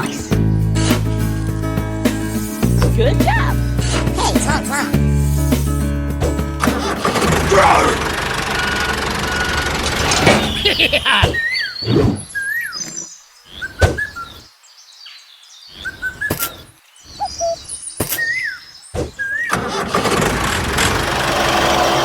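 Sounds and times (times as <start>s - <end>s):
birds chirping: 0.0s - 20.0s
small motor humming: 7.1s - 10.3s.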